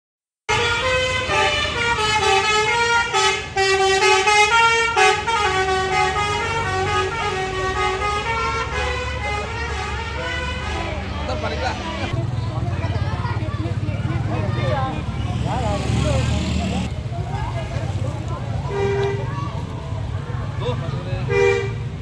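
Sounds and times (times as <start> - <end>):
bus musical horn tune: 0.5 - 11.2
bus engine rumble: 0.5 - 22.0.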